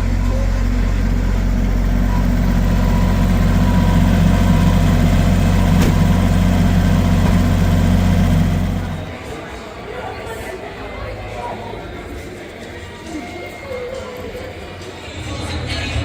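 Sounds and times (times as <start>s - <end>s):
vehicle engine idling: 0.0s - 9.3s.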